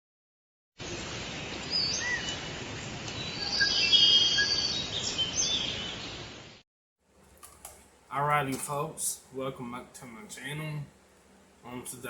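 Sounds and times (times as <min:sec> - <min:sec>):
outdoor background hiss: 0:00.8 - 0:12.0
birds chirping and calling: 0:03.1 - 0:06.3.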